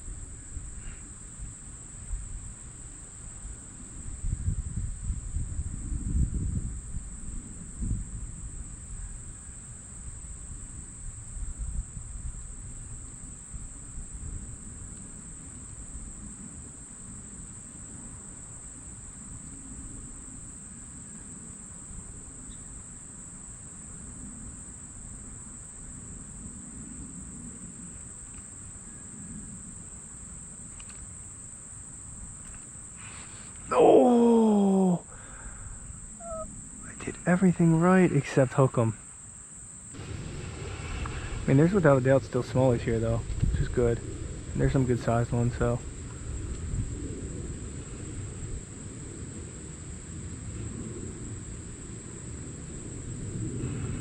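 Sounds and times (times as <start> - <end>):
crickets chirping: 0.0 - 54.0
low rumble on microphone: 3.4 - 9.4, 40.0 - 54.0.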